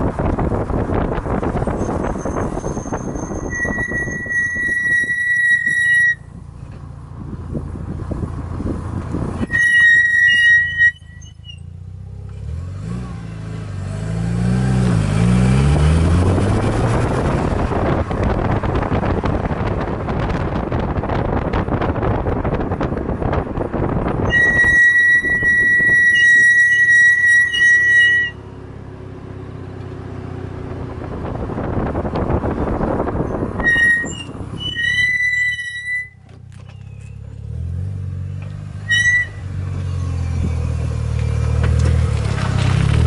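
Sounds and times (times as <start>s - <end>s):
car driving noise: 0.0s - 43.0s
car brakes squealing: 1.6s - 6.5s, 9.3s - 11.8s, 24.2s - 28.6s, 33.2s - 37.6s, 38.3s - 40.8s
car engine revving: 12.0s - 24.6s.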